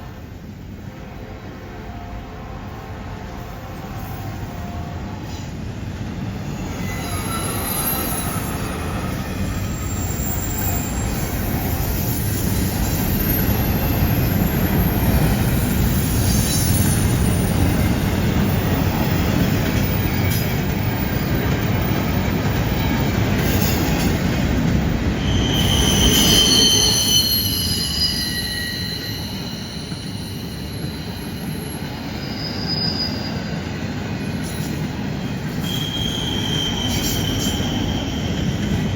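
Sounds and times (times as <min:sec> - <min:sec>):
train wheels rumbling on rails: 0:02.7 - 0:38.9
wheel flange squeal: 0:25.2 - 0:33.5, 0:35.6 - 0:38.9.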